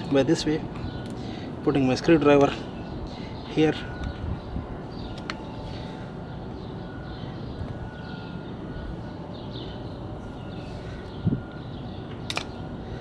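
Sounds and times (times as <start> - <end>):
birds chirping: 0.0 - 13.0
low outdoor background hum: 0.0 - 13.0
sharp click: 12.2 - 12.6.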